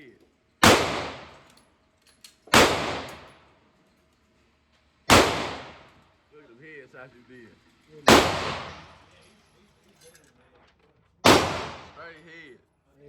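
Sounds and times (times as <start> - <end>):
pistol shots: 0.6 - 1.4, 2.5 - 3.4, 5.1 - 5.9, 8.1 - 9.0, 11.2 - 12.1.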